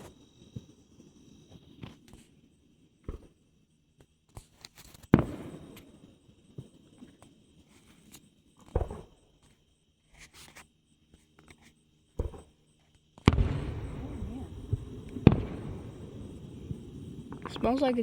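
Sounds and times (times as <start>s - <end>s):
faint firework pops: 3.0s - 3.4s, 4.0s - 6.8s, 8.6s - 9.6s, 12.1s - 12.6s, 13.2s - 18.0s
fireworks bangs: 5.1s - 6.8s, 13.2s - 18.0s.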